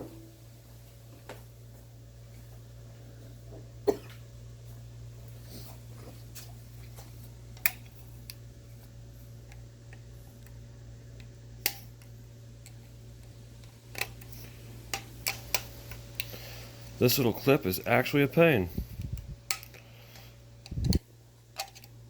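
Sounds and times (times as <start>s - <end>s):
steady low hum: 0.0s - 22.0s
sharp clicks of parts handled: 7.6s - 8.4s, 11.2s - 16.4s, 19.0s - 21.0s, 21.6s - 22.0s.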